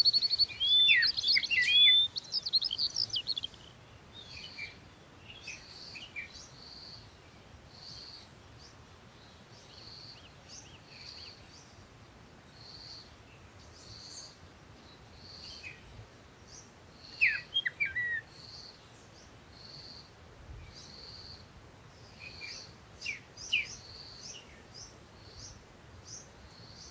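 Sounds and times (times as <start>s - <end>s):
sharp bird chirps: 0.0s - 3.7s
jungle birds calling: 0.0s - 7.1s, 16.5s - 20.1s, 22.1s - 26.9s
soft background hiss: 0.0s - 26.9s.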